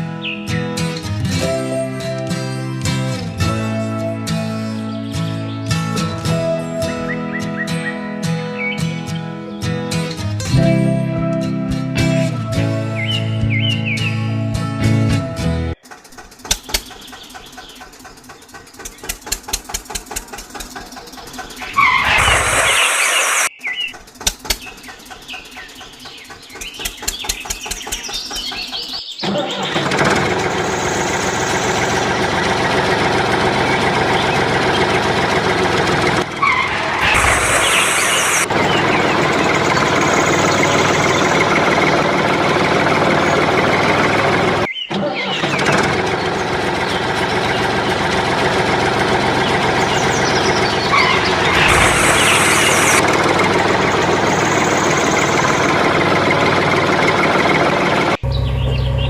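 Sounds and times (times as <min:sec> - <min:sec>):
vehicle engine idling: 0:15.7 - 0:44.7, 0:45.4 - 0:59.0
harsh engine sound: 0:15.7 - 0:59.0.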